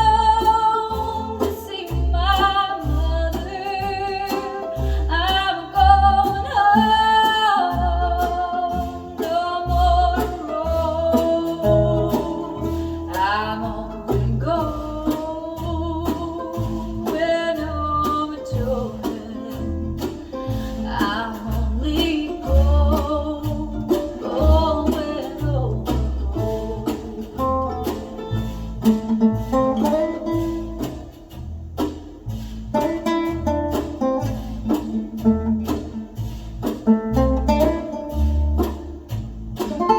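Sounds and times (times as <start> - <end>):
plucked guitar: 0.0 - 39.9
steady bass beat: 19.5 - 39.9
person singing: 20.9 - 28.0.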